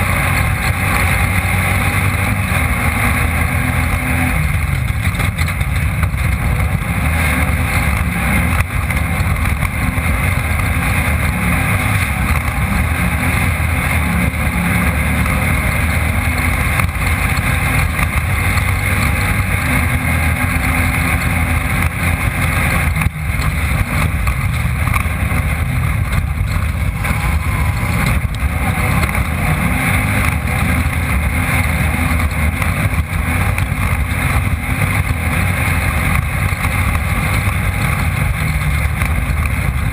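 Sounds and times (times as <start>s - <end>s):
race car engine running hard: 0.0s - 39.9s
steady rushing noise: 0.0s - 39.9s.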